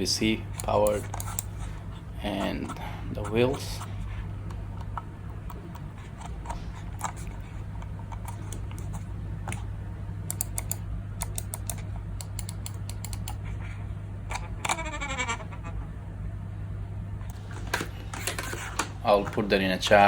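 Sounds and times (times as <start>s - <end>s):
low electrical hum: 0.0s - 20.0s
computer mouse clicking: 0.6s - 1.7s, 4.5s - 9.7s, 10.3s - 13.6s.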